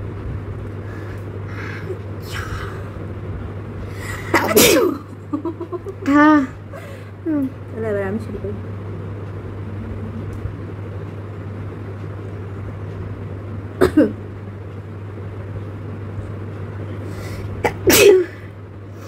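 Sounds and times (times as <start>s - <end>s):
steady low hum: 0.0s - 19.0s
person sneezing: 4.4s - 5.0s, 17.6s - 18.4s.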